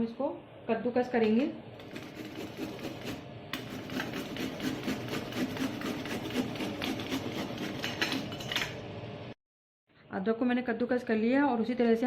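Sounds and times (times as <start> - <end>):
ginger grating on grater: 1.8 - 8.3.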